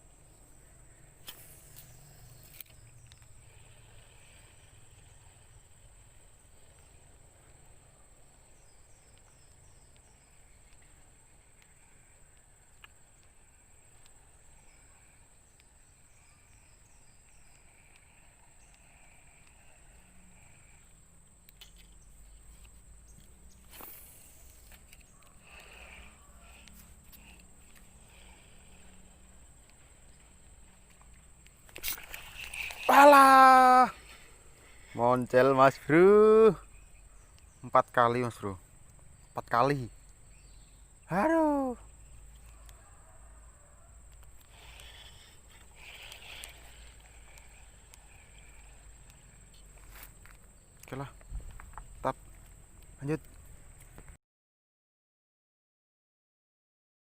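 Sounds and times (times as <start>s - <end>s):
high-pitched insect drone: 0.0s - 52.3s
sharp clicks: 44.1s - 54.1s.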